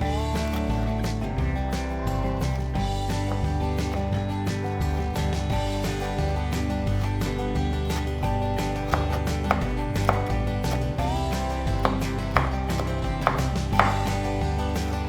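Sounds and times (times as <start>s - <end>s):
background music: 0.0s - 15.0s
knife chopping on cutting board: 8.9s - 10.8s, 11.8s - 14.1s.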